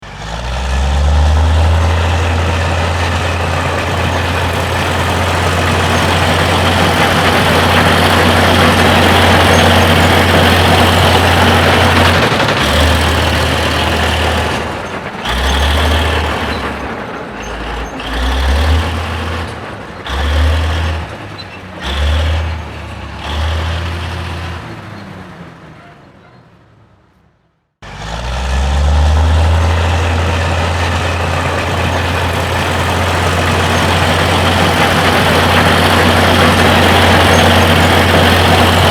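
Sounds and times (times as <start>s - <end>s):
heavy engine rumbling: 0.0s - 38.9s.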